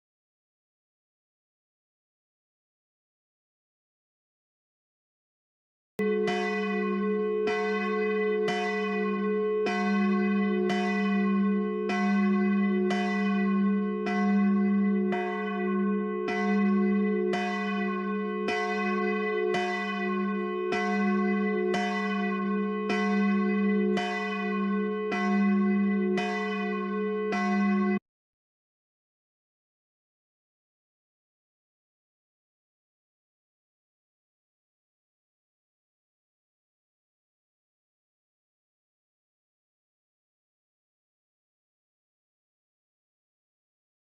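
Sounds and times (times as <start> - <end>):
church bell tolling: 6.0 - 28.0.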